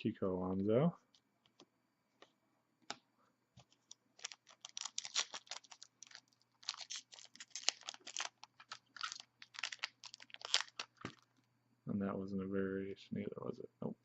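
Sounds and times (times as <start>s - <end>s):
wrapping crinkling: 3.6s - 11.5s.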